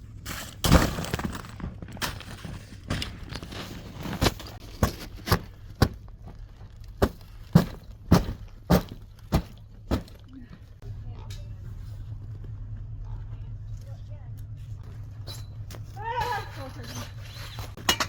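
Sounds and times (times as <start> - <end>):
ice cracking and crunching: 0.3 - 9.3.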